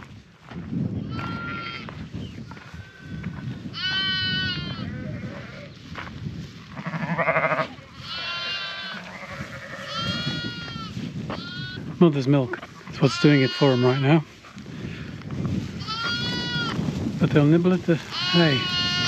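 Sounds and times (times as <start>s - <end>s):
sheep and lambs bleating: 1.0s - 5.9s, 6.6s - 12.0s, 12.8s - 14.3s, 15.6s - 16.8s, 17.8s - 19.0s.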